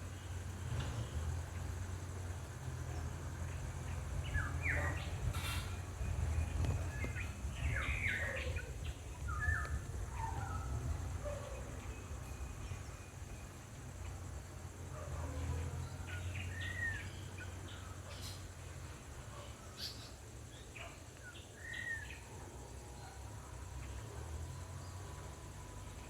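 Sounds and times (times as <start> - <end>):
faint clicks and tweets: 0.0 - 2.0, 2.6 - 14.3, 19.3 - 26.0
bird chirps: 2.9 - 14.2.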